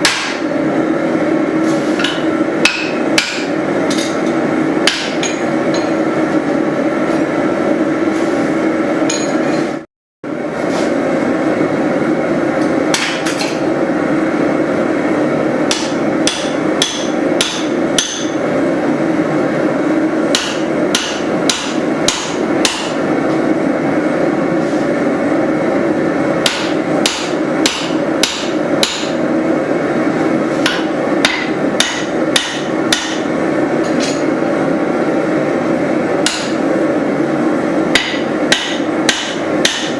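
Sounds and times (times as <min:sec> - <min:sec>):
steady background roar: 0:00.0 - 0:39.9.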